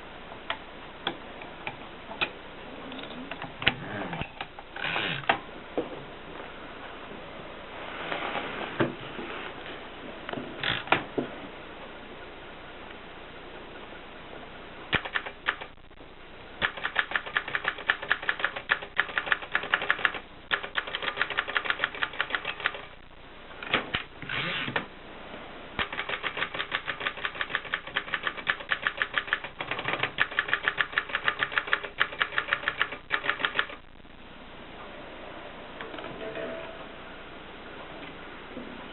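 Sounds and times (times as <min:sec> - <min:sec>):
typewriter keystroke clacks: 0:14.9 - 0:15.7, 0:16.6 - 0:22.9, 0:25.8 - 0:33.8.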